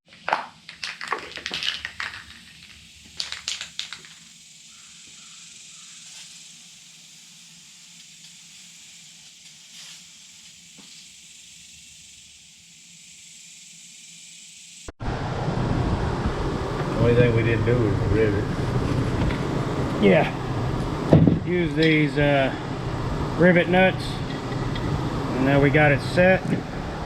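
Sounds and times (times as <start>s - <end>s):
spray paint can hissing: 0.1s - 14.9s.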